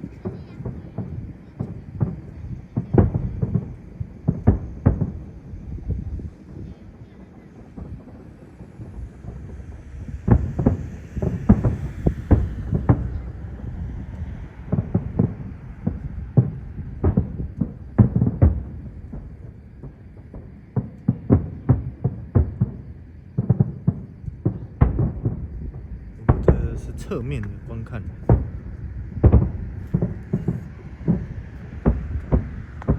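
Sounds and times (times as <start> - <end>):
fireworks booming and cracking: 0.0 - 32.9.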